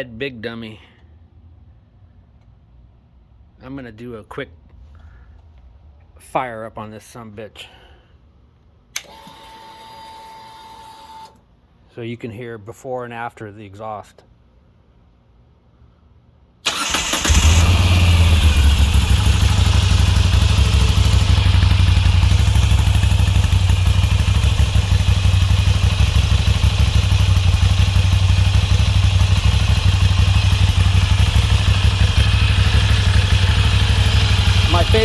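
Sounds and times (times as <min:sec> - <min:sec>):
motorcycle electric starter: 0:16.7 - 0:35.0
motorcycle engine idling: 0:16.8 - 0:35.0.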